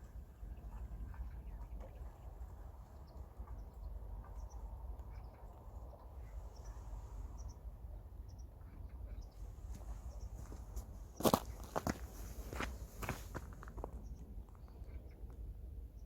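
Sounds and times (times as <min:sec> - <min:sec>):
small birds chirping: 0:00.5 - 0:13.2.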